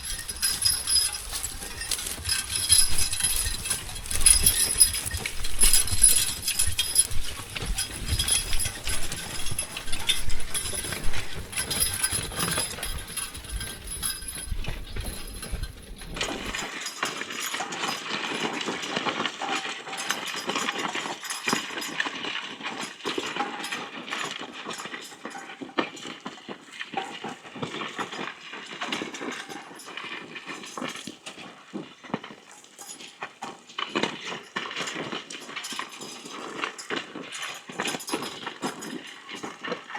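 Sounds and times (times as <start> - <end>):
hooves knocking: 0.0 - 16.7
metal harness jingling: 0.0 - 18.7, 34.2 - 39.9.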